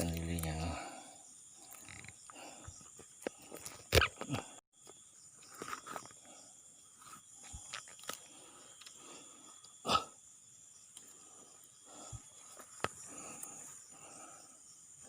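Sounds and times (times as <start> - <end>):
night insects buzzing: 0.0 - 15.0.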